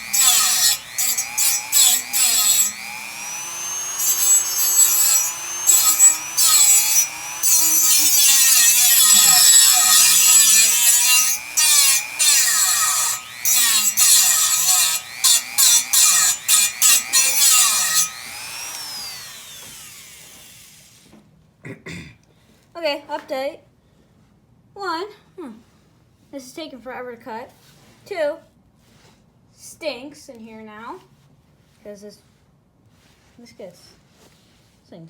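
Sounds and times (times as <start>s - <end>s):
rotary tool grinding metal: 0.0s - 21.0s.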